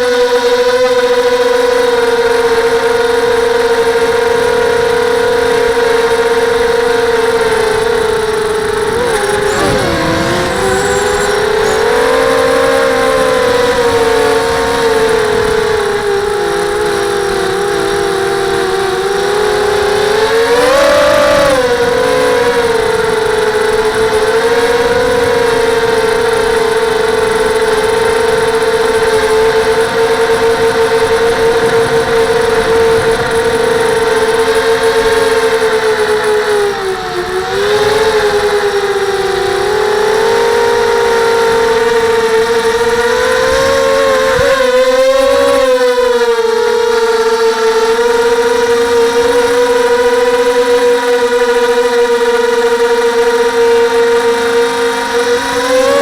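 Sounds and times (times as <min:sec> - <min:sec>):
drone motors whining: 0:07.4 - 0:28.6.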